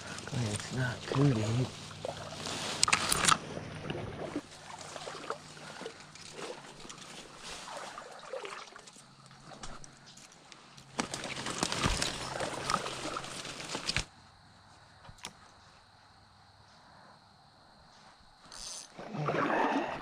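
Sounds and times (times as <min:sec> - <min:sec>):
wading steps splashing in water: 0:00.0 - 0:09.6.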